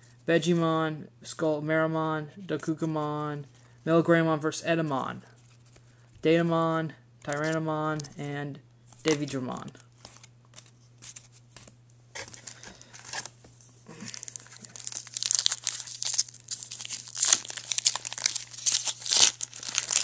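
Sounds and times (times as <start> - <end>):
plastic wrapper crinkling and tearing: 12.2 - 20.0.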